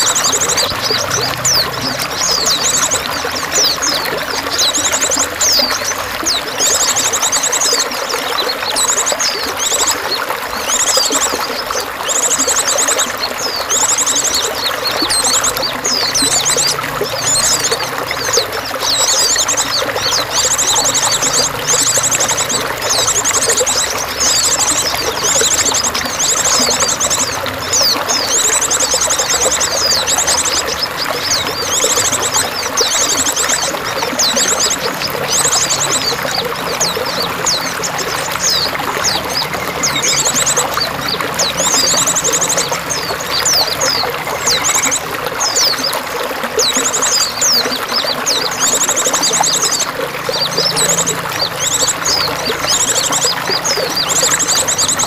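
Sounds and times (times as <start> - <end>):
songbirds chirping and trilling: 0.0 - 55.0
trickling water: 0.0 - 55.0.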